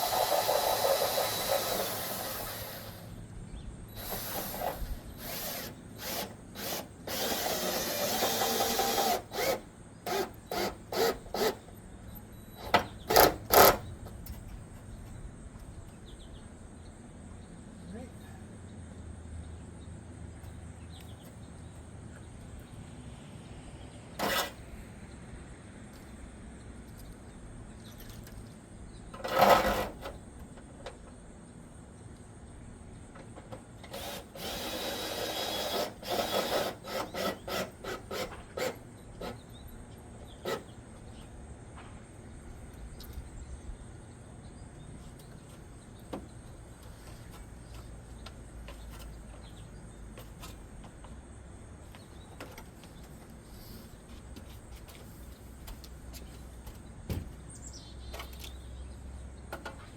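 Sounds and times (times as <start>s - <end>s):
cordless drill driving screw: 0.0s - 3.1s, 4.0s - 11.6s, 24.2s - 24.6s, 33.9s - 39.4s.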